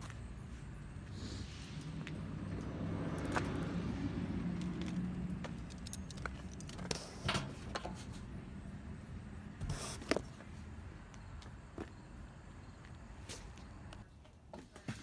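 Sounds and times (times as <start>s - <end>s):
vehicle engine humming: 0.0s - 14.1s
sharp clicks and rattles: 4.8s - 8.1s.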